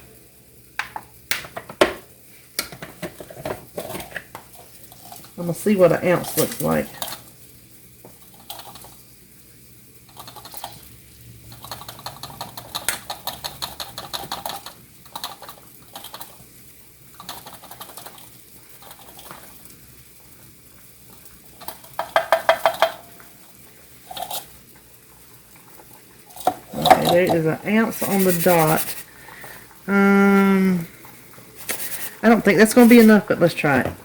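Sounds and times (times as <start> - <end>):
utensil scraping and clinking a bowl: 3.2 - 7.3, 26.3 - 29.1.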